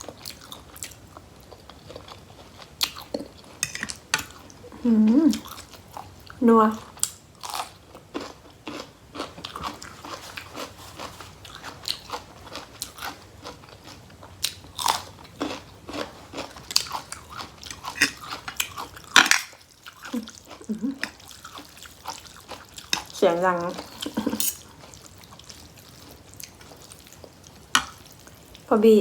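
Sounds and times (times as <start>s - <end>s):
wet chewing and crunching: 0.0s - 4.6s, 7.0s - 28.7s
fork striking a bowl: 3.6s - 3.9s.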